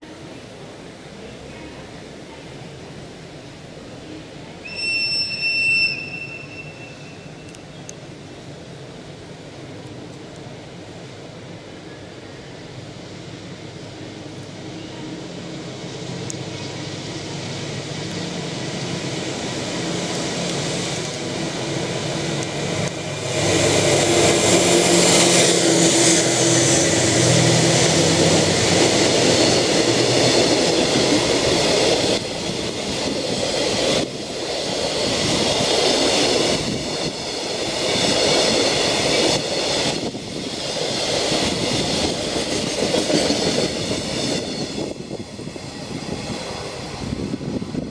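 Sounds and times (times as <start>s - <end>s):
locomotive engine hum: 7.3s - 44.2s.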